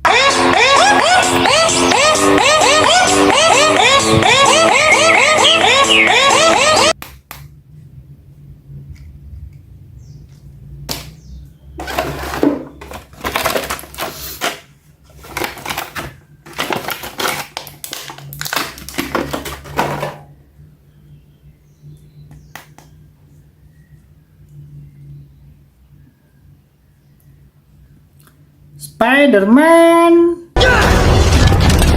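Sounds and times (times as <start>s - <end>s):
plastic packaging crinkling: 11.8s - 20.2s.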